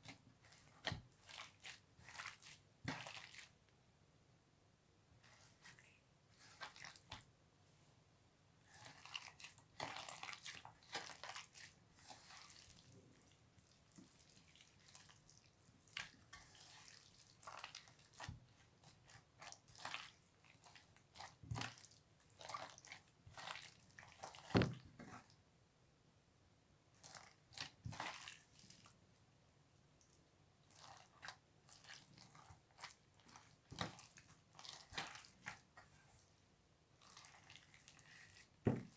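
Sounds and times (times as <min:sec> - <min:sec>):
slime squishing with wet clicks: 0:08.6 - 0:25.4, 0:27.0 - 0:29.0, 0:30.0 - 0:36.0.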